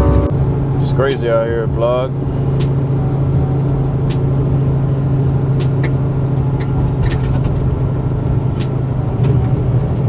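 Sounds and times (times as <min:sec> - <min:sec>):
truck diesel engine droning: 0:00.0 - 0:10.0.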